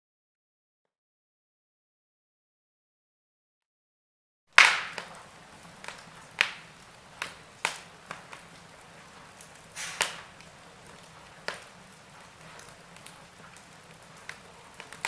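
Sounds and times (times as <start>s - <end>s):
wood fire crackling: 4.5s - 15.0s
soft steady hiss: 4.6s - 15.0s.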